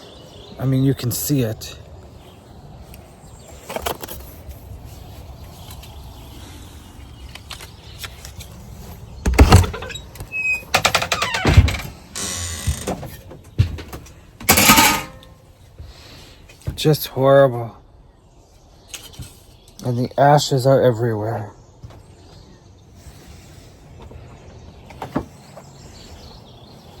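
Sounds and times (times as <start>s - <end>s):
loud knocks: 9.2s - 9.8s.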